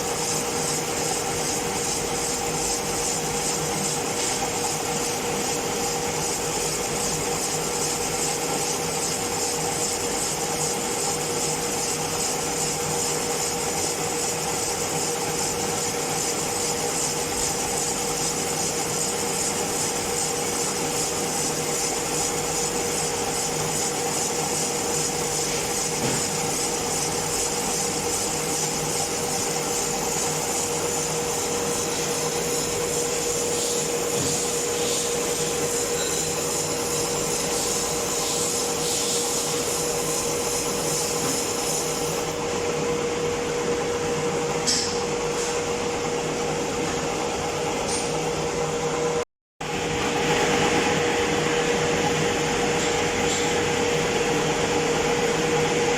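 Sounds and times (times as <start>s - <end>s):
lathe tool scraping hiss: 0.0s - 42.4s.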